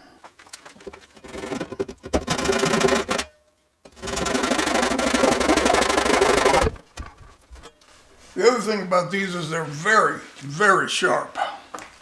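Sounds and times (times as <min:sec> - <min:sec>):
saw rasping through wood: 0:01.2 - 0:03.3, 0:04.0 - 0:07.4.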